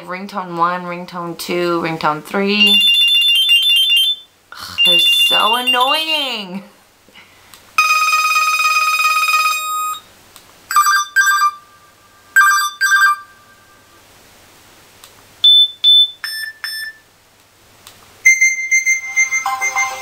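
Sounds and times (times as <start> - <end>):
short phone beeps: 2.6 - 6.0, 12.4 - 13.5, 15.4 - 17.0, 18.3 - 20.0
electronic phone ringtone: 2.6 - 6.1, 7.8 - 10.0, 10.7 - 11.7, 12.4 - 13.8, 15.5 - 17.0, 18.3 - 20.0.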